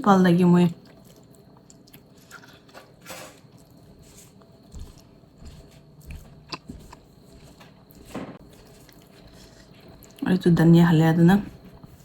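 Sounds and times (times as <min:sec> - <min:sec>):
person chewing food: 0:00.8 - 0:02.8, 0:03.4 - 0:10.2.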